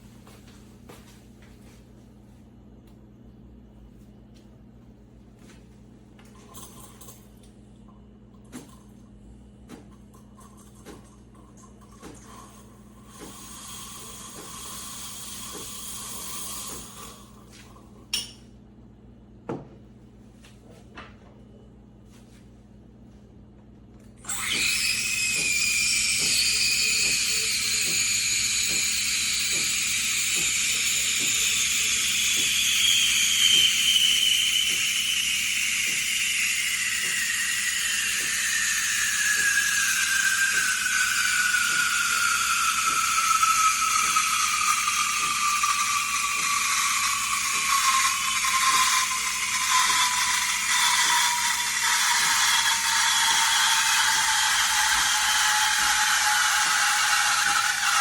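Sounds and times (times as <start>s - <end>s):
steam wand hissing: 13.0s - 17.2s, 24.3s - 58.0s
pump ticking: 24.3s - 58.0s.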